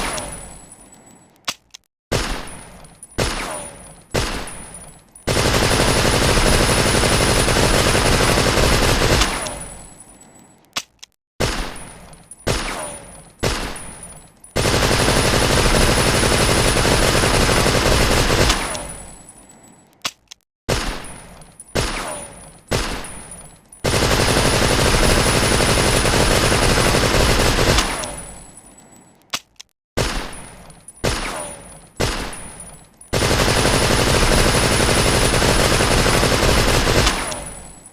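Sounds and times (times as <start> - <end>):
submachine gun automatic fire: 5.3 - 9.6, 14.6 - 18.8, 23.8 - 28.3, 33.1 - 37.8.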